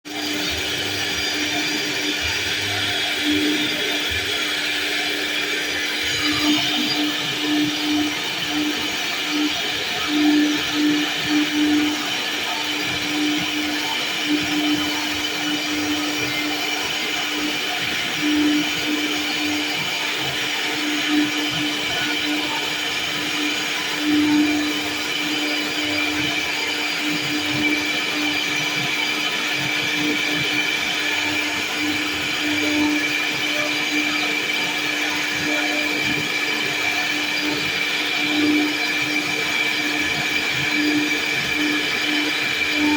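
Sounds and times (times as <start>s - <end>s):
router spindle whining: 0.1s - 42.9s.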